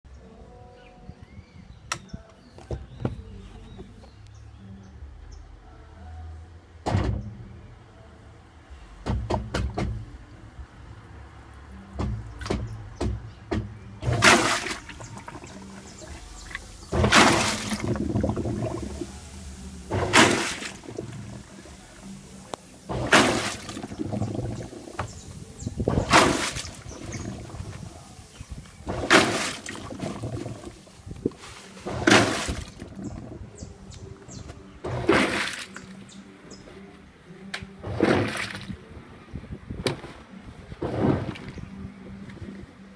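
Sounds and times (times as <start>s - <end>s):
water sloshing in washing machine: 14.0s - 22.1s, 22.8s - 25.2s, 25.8s - 27.9s, 28.8s - 31.0s, 31.8s - 33.4s, 34.9s - 35.9s, 37.8s - 38.8s.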